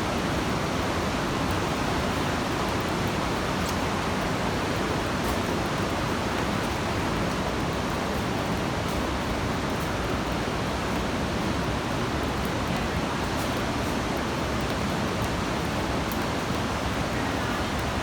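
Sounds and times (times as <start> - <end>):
fast-flowing river rushing: 11.4 - 18.0.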